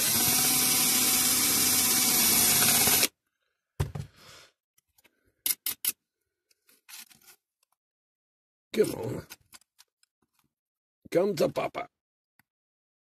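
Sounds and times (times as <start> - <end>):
small electric power tool running: 0.0 - 3.1
knock: 3.8 - 4.1.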